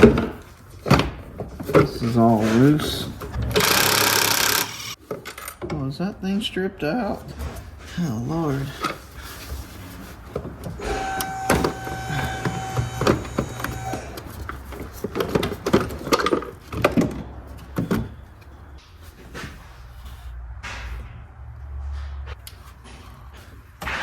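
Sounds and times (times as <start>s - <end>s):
small electric motor whirring: 3.6s - 5.0s, 10.8s - 14.2s.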